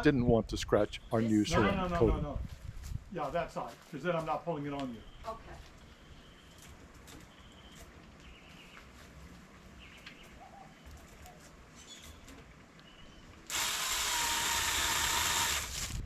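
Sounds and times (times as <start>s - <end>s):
faint bird chirps: 4.9s - 6.6s, 7.2s - 8.8s, 9.8s - 13.3s
harsh rasping of trimming tool: 13.5s - 16.0s.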